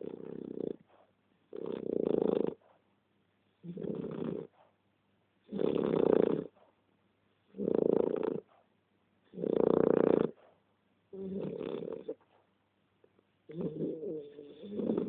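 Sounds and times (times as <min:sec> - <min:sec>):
pet snoring: 0:00.0 - 0:02.6, 0:03.6 - 0:04.6, 0:05.5 - 0:06.6, 0:07.5 - 0:08.6, 0:09.3 - 0:10.5, 0:11.1 - 0:12.3, 0:13.5 - 0:15.0.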